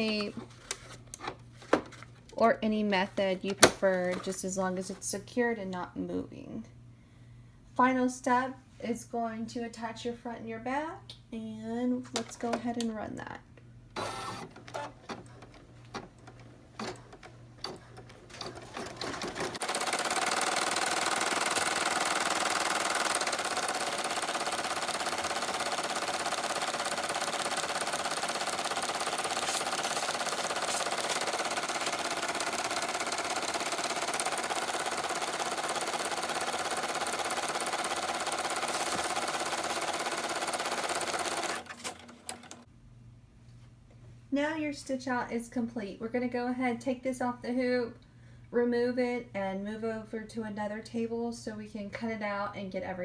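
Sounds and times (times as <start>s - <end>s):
embroidery machine stitching: 14.0s - 42.6s
machine clicks: 16.4s - 42.6s.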